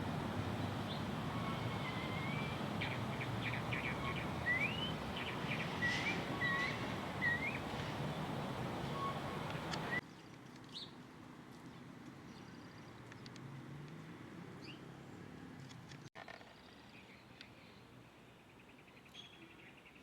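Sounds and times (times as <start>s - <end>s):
steady background hiss: 0.0s - 10.0s.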